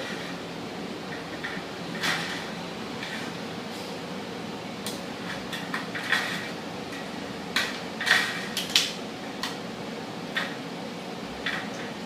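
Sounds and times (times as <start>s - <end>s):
sheet metal clicks and scrapes: 1.1s - 3.4s, 4.9s - 9.6s.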